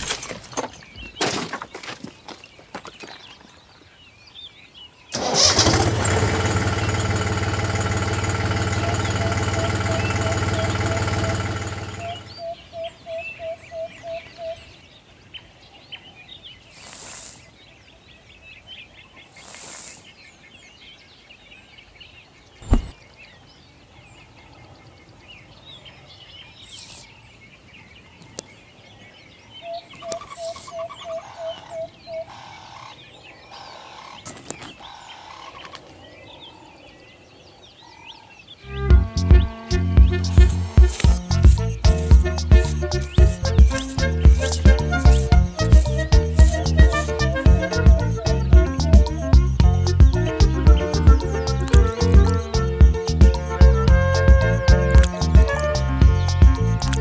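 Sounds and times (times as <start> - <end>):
small motor running: 5.2 - 12.4, 40.2 - 48.5, 49.6 - 57.0
sharp click: 22.6 - 23.0, 40.3 - 47.2
short repeated chirps: 40.1 - 57.0.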